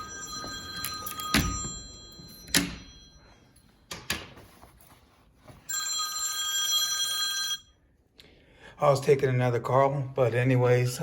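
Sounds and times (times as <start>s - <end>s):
phone ringing: 0.0s - 3.5s, 5.6s - 7.8s.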